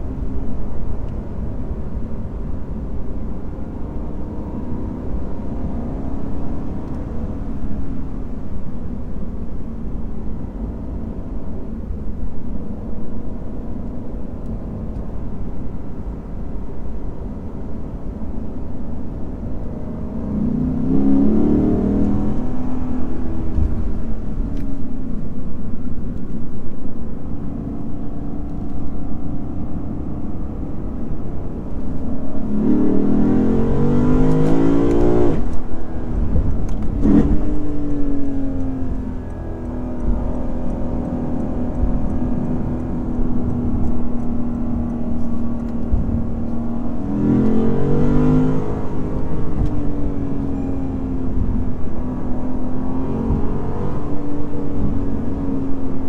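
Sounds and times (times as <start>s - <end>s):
car engine running: 0.0s - 56.0s
tyre and road noise: 19.2s - 56.0s.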